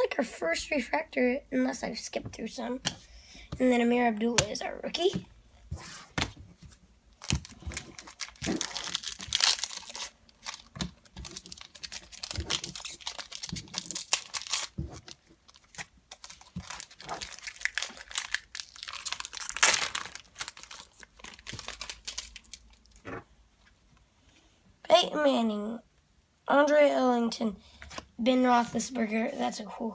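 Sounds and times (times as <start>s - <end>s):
foil wrapper tearing and crinkling: 7.2s - 22.9s.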